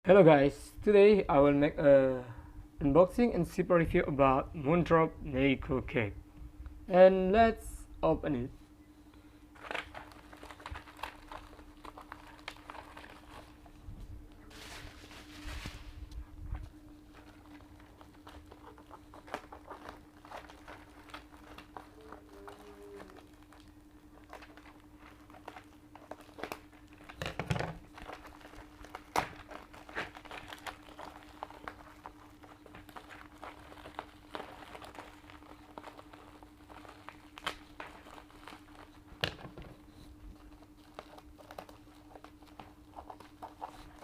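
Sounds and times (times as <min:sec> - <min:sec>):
faint steady hum: 0:00.0 - 0:44.0
packaging rustling and scraping: 0:09.5 - 0:44.0.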